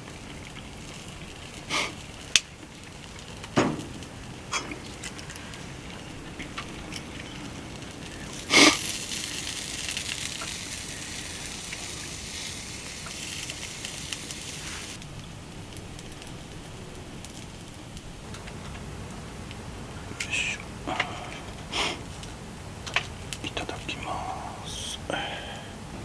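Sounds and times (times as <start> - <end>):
wood fire crackling: 0.0 - 26.0
high hiss: 1.6 - 2.2, 7.9 - 15.0, 19.9 - 22.2, 23.4 - 26.0.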